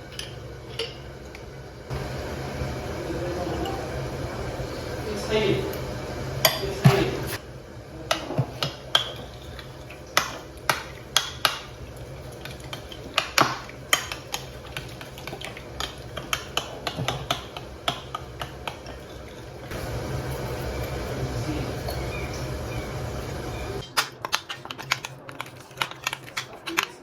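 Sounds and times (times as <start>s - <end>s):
kitchenware clicking and clinking: 0.0s - 1.5s, 6.4s - 7.4s, 8.1s - 19.7s, 23.6s - 27.0s.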